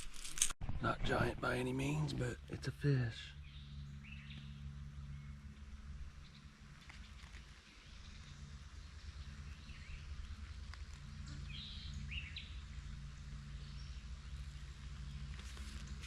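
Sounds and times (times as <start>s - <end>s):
low steady hum: 0.0s - 16.0s
bird chirps: 3.2s - 16.0s.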